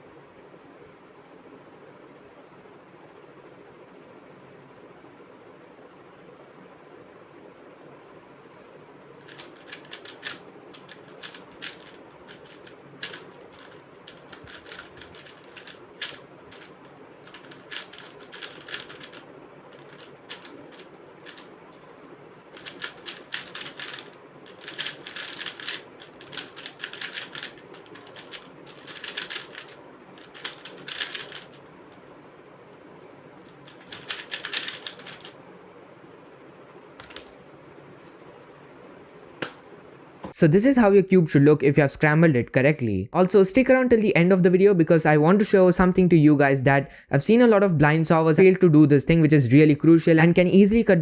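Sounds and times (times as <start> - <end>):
speedcube layer turns clicking: 9.2 - 21.5, 22.5 - 32.0, 33.4 - 35.4.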